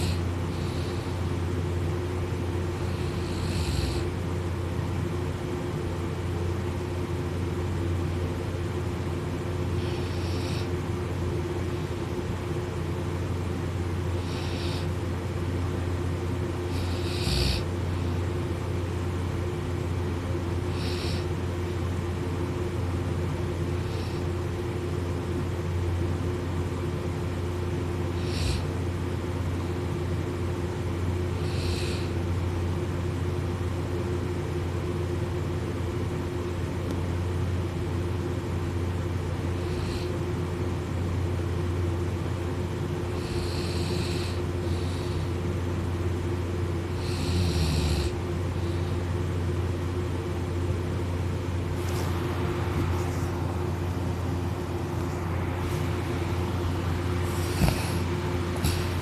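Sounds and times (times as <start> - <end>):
person snoring: 0.0 - 1.3, 2.8 - 4.1, 9.8 - 10.7, 14.1 - 15.0, 16.7 - 17.7, 28.2 - 28.7, 31.4 - 32.2, 43.1 - 45.4, 46.9 - 48.9, 55.6 - 59.0
steady low hum: 0.0 - 59.0.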